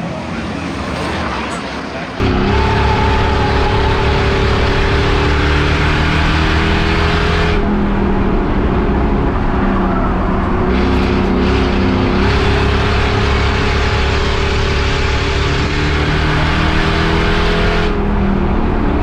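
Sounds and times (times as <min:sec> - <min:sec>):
race car engine at high revs: 0:00.0 - 0:19.0.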